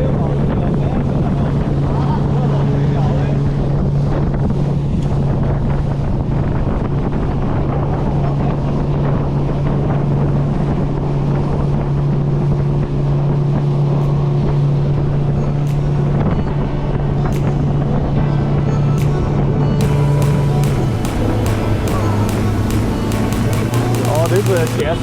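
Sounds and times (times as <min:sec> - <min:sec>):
wind: 0:00.0 - 0:19.9.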